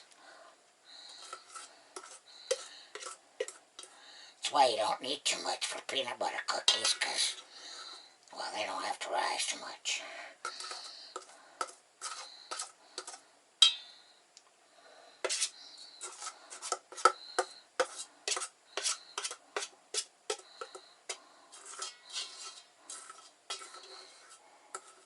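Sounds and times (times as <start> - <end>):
utensil scraping a mixing bowl: 1.0 - 4.0, 10.4 - 13.2, 15.2 - 25.0.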